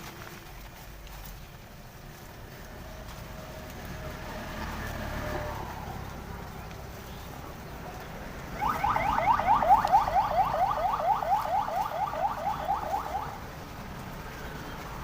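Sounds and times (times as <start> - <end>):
siren-like sweeping tone: 8.6 - 13.4.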